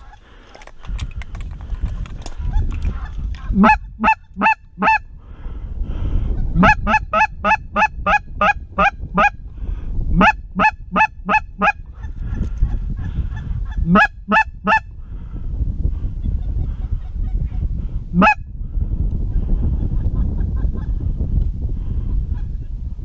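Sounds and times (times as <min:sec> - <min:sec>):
goose call honks: 0:03.0 - 0:05.0, 0:06.6 - 0:09.4, 0:10.2 - 0:11.8, 0:13.7 - 0:14.9, 0:18.2 - 0:18.4.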